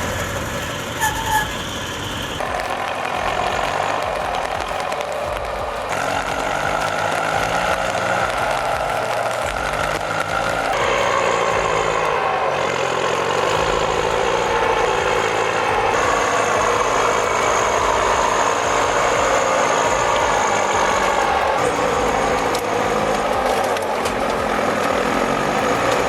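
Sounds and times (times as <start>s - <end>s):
heavy truck engine under load: 0.0s - 26.0s
thin high whine: 0.0s - 26.0s.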